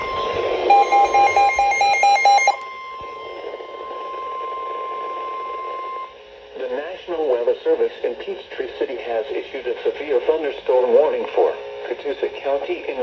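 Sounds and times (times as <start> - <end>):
high alarm tone through radio: 0.0 - 6.2
rapid electronic beeping: 0.6 - 6.1.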